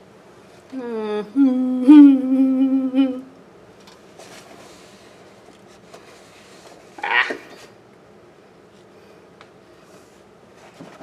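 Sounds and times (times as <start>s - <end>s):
man humming: 0.7s - 3.4s.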